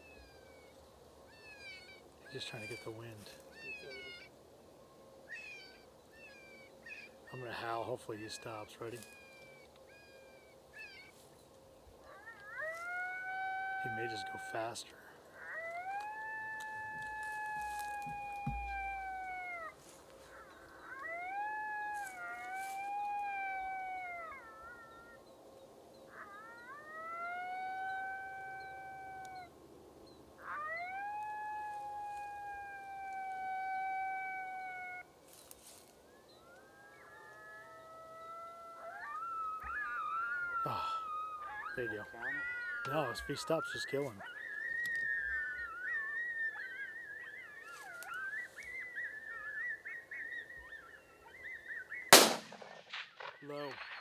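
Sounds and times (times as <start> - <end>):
coyote howl call: 0.0 - 11.2, 11.9 - 25.4, 26.0 - 54.0
rifle shot with echo: 52.1 - 54.0.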